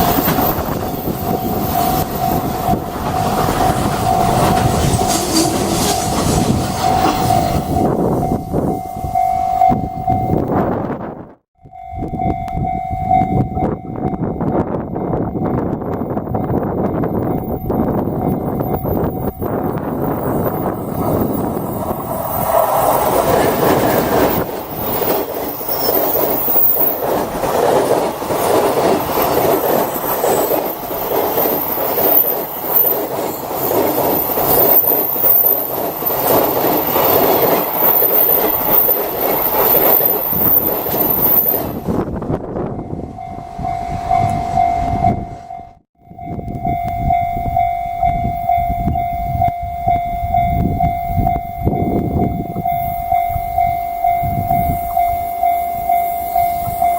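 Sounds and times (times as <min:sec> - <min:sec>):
train wheels clattering: 0:00.0 - 0:07.8, 0:20.0 - 0:41.9
level crossing alarm: 0:00.0 - 0:10.6, 0:11.6 - 0:27.0, 0:42.7 - 0:56.9
train rumble: 0:00.0 - 0:56.9.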